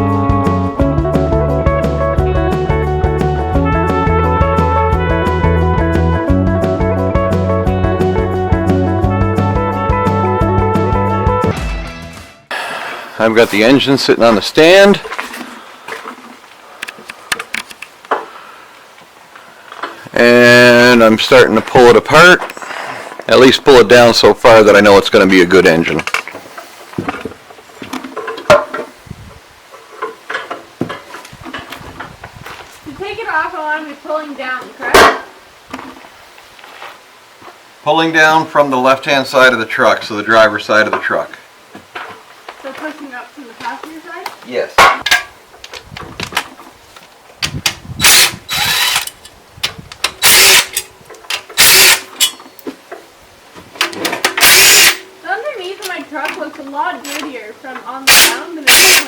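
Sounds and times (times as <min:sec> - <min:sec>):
impact wrench bursts: 0:48.0 - 0:49.2, 0:50.1 - 0:50.9, 0:51.5 - 0:52.4, 0:54.2 - 0:55.1, 0:58.1 - 0:59.0
tools and metal parts clinking: 0:50.4 - 0:52.6.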